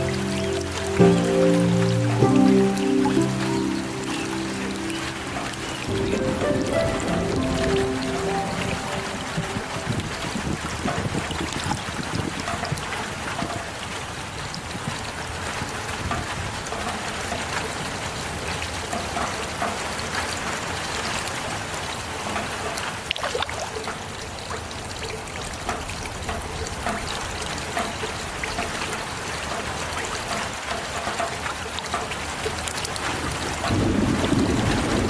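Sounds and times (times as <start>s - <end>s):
heavy rain falling: 0.0s - 13.2s, 32.2s - 35.0s.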